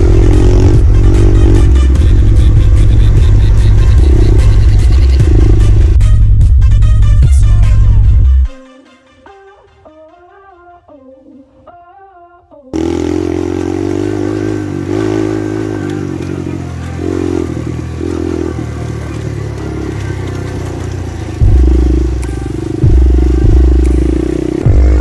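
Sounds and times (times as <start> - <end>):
motorbike engine revving: 0.0 - 6.2, 12.8 - 25.0.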